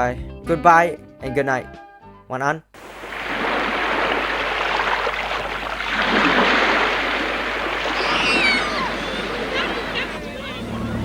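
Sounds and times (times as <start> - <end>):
steady rushing noise: 2.8 - 11.0.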